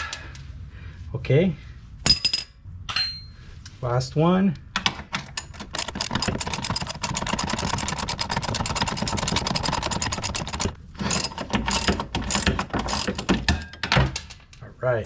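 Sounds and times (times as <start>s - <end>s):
tool clicking rapidly: 5.4s - 13.5s.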